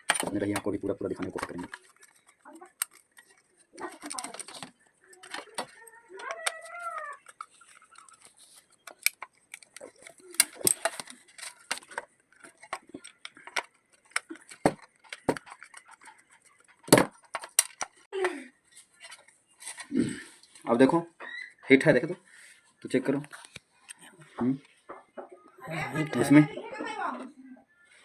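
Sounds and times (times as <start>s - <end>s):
tools clicking and knocking: 0.0s - 18.1s.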